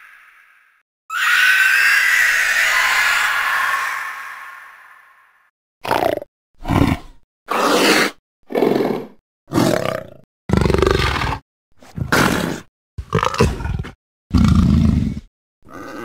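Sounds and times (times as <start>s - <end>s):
creature roars and growls: 5.8s - 11.4s, 12.0s - 16.0s.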